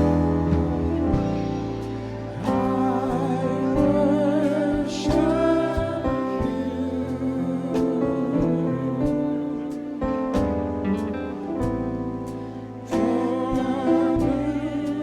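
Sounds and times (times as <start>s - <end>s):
person singing: 0.0s - 10.2s, 12.4s - 15.0s
keyboard chords and bass: 0.0s - 15.0s.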